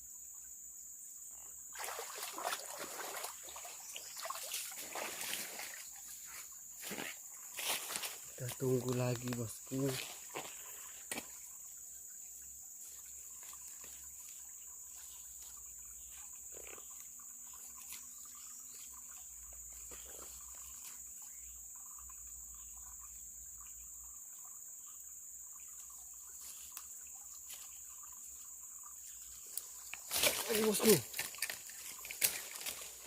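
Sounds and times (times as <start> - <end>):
insects droning: 0.0 - 33.0
small ticks: 12.8 - 30.4, 31.0 - 32.9.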